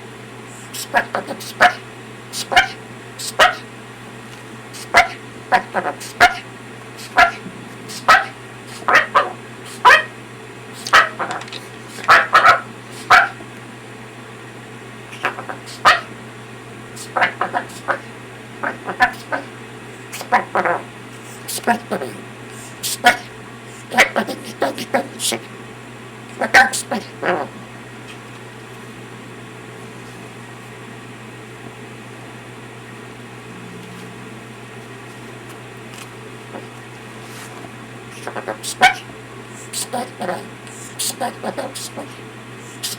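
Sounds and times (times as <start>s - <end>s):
appliance humming: 0.0s - 42.9s
parrot cough-like calls: 0.5s - 3.7s, 4.8s - 10.2s, 10.8s - 11.4s, 12.0s - 13.4s, 15.1s - 16.2s, 17.0s - 25.5s, 26.4s - 27.6s, 38.1s - 42.9s
brief voice-like sound: 33.4s - 34.5s.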